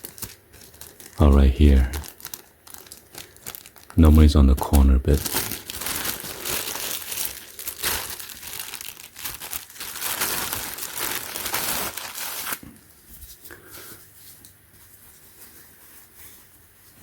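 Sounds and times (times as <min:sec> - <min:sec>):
plastic bag crinkling: 0:00.0 - 0:12.9
soft rustles: 0:09.3 - 0:17.0.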